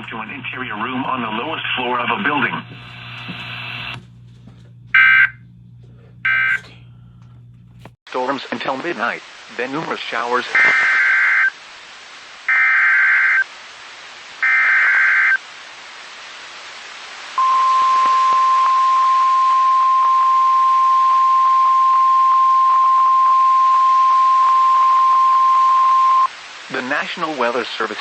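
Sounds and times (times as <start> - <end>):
steady warning alarm tone: 4.9 - 5.5, 6.2 - 6.8, 17.4 - 26.3.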